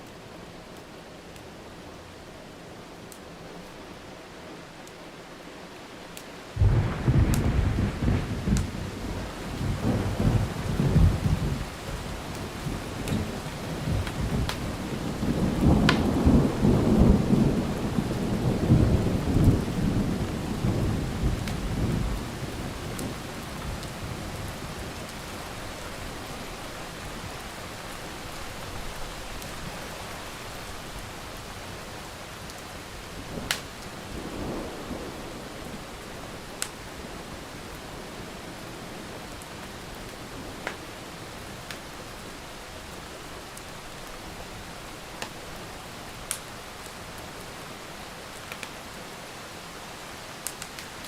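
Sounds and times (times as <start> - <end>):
steady rain: 0.0 - 51.0
rolling thunder rumble: 6.6 - 25.4.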